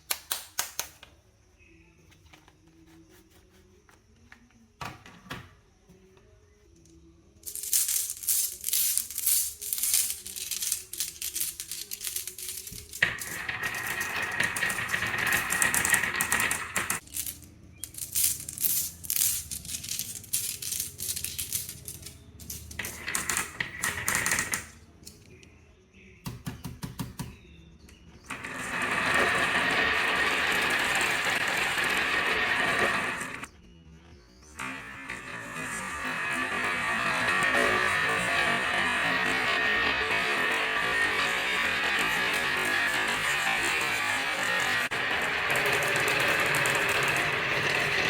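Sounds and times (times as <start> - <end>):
marbles clicking down wooden run: 7.4 - 24.8, 28.3 - 33.5, 35.1 - 48.0
marbles rolling: 7.4 - 24.8, 28.3 - 33.5, 34.6 - 48.0.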